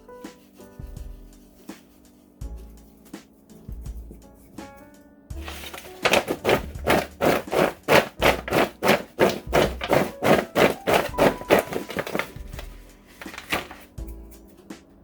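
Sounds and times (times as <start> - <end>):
background music with low bass: 0.0 - 15.0
rhythmic shaking or rustling: 5.4 - 14.7.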